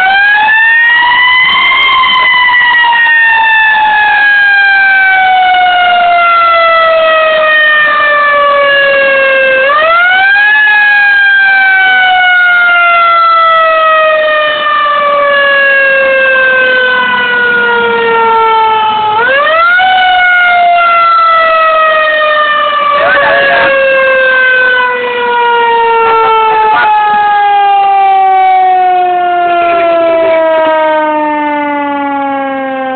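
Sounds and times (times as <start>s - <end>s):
fire engine siren wailing: 0.0s - 32.9s.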